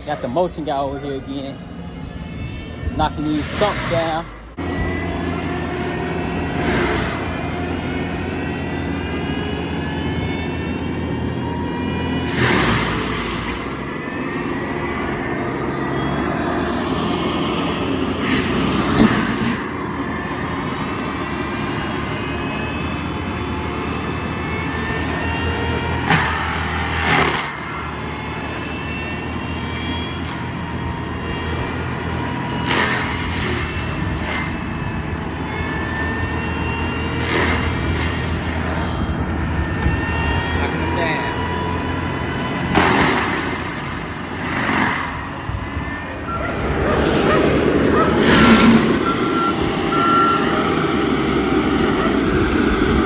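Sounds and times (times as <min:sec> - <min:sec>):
machine engine running under load: 0:00.0 - 0:53.0
sharp cracks and knocks: 0:26.0 - 0:27.6, 0:32.6 - 0:34.5, 0:37.1 - 0:38.4.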